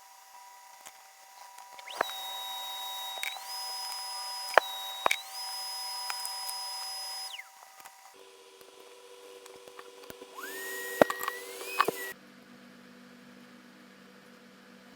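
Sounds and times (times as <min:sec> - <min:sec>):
electric rotary tool whining: 0:00.0 - 0:12.2
sharp clicks: 0:00.7 - 0:08.2, 0:09.7 - 0:12.2.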